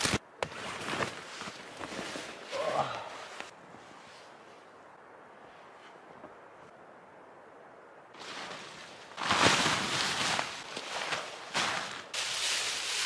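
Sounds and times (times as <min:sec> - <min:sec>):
foil blanket crinkling: 0:08.2 - 0:13.0.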